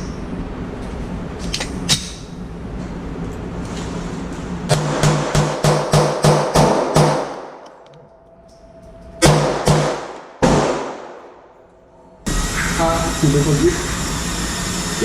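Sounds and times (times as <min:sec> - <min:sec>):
gunshots ringing out: 0:04.7 - 0:07.6, 0:09.2 - 0:11.4.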